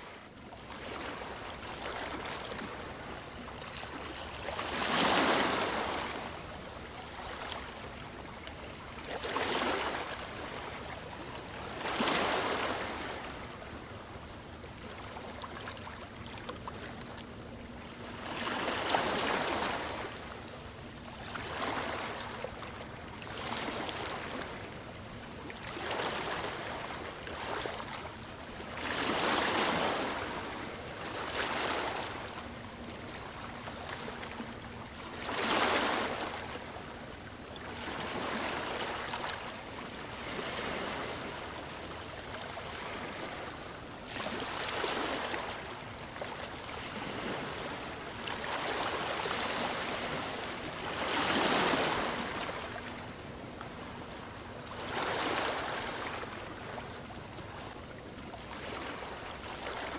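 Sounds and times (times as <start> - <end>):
sea waves breaking ashore: 25.7 - 57.8.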